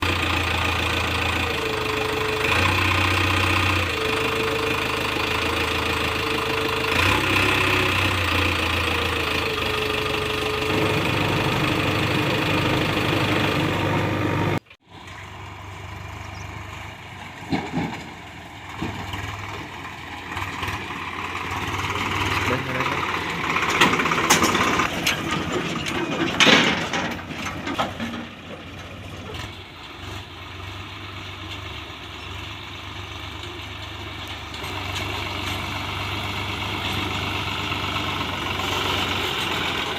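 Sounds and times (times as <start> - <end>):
quieter engine sound: 0.0 - 25.5
diesel engine running loud: 0.0 - 39.9.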